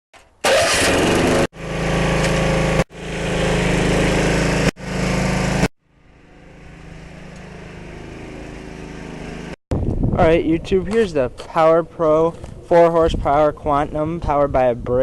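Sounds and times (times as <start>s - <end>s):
lawn mower engine running: 0.4s - 9.6s.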